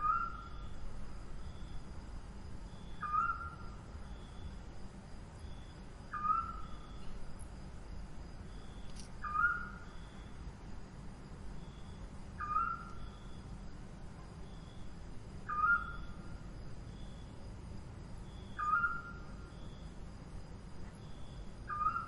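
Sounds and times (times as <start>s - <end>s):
owl hooting: 0.0s - 0.6s, 3.0s - 3.7s, 6.1s - 6.8s, 9.2s - 9.8s, 12.4s - 13.0s, 15.5s - 16.1s, 18.6s - 19.2s, 21.7s - 22.0s
low background rumble: 0.0s - 21.8s.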